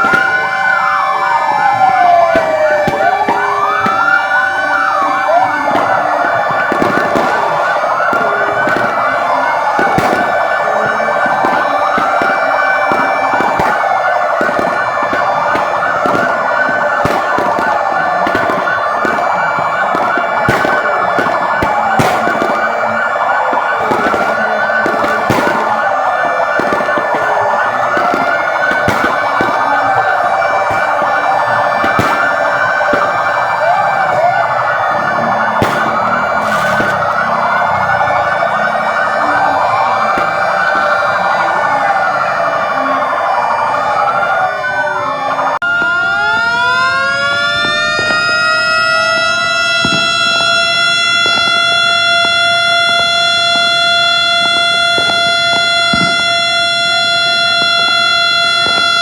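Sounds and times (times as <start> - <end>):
fire engine sirens wailing: 0.0 - 59.0
sharp pops: 1.7 - 39.2.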